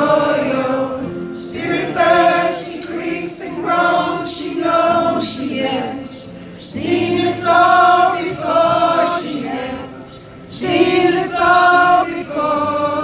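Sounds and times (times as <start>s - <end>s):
choir singing wordless melody: 0.0s - 13.0s.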